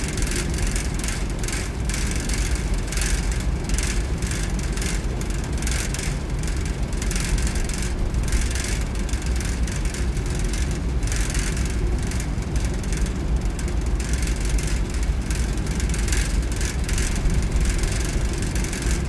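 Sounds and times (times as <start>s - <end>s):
ferry low rumble: 6.7s - 19.0s.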